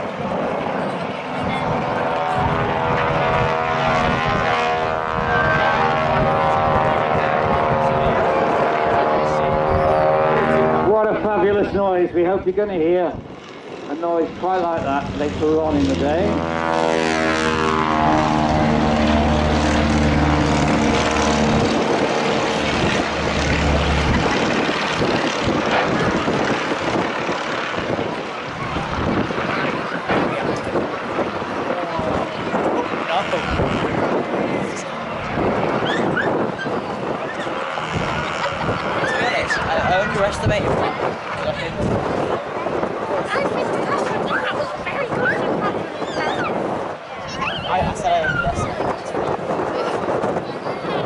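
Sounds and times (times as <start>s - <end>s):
propeller aircraft engine passing: 0.0s - 51.0s
wind on microphone: 0.0s - 51.0s.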